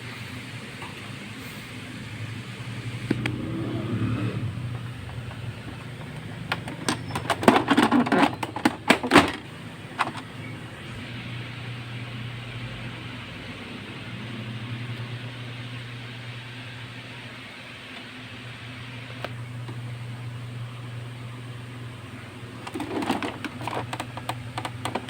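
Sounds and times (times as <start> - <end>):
steady low hum: 0.0 - 25.0
sharp clicks and knocks: 22.6 - 25.0.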